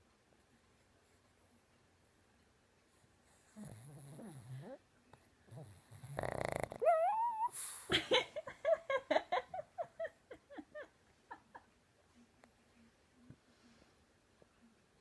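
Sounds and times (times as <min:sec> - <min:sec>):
dog snoring: 0:03.3 - 0:04.8, 0:05.5 - 0:07.5
squeaky dog whine: 0:06.7 - 0:07.6.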